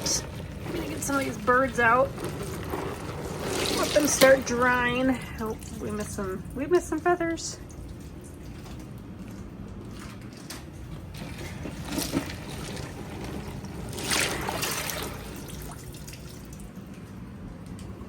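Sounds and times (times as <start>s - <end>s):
ice water splashing and dripping: 0.0s - 17.2s.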